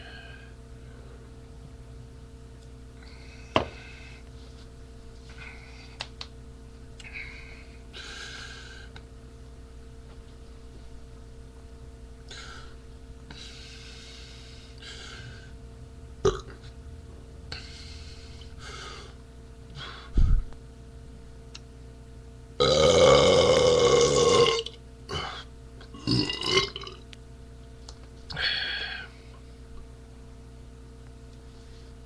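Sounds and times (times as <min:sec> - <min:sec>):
man burping: 0:16.2 - 0:16.6, 0:22.6 - 0:27.0.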